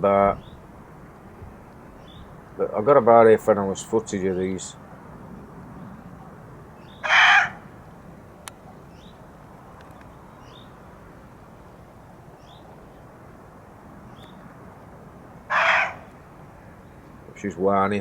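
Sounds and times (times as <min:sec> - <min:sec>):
deer barking: 0:07.0 - 0:07.7, 0:15.5 - 0:16.2.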